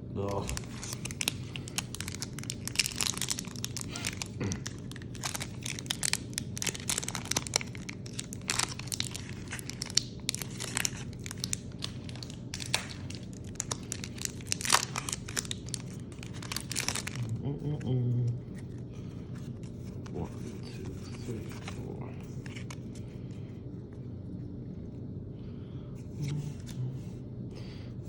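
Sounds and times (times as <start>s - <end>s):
foil wrapper crinkling: 0.3s - 17.4s.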